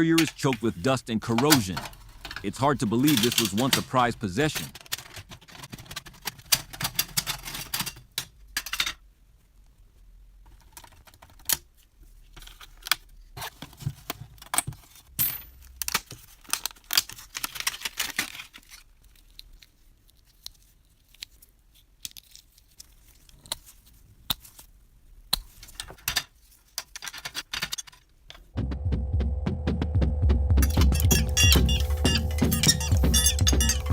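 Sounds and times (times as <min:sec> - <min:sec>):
small metal parts clicking and rattling: 0:01.6 - 0:03.9, 0:04.5 - 0:09.0, 0:25.6 - 0:28.5.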